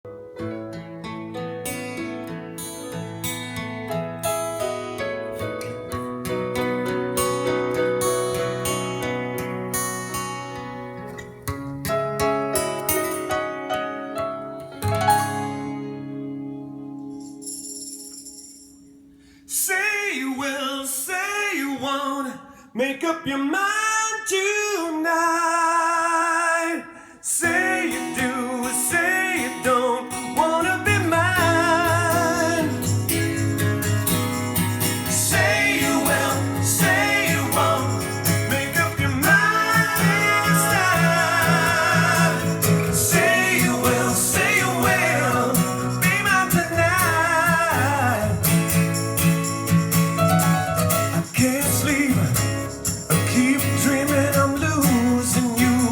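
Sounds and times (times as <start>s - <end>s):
guitar: 0.0s - 22.5s, 26.6s - 55.9s
male singing: 19.5s - 32.9s, 35.2s - 48.5s, 51.3s - 55.9s.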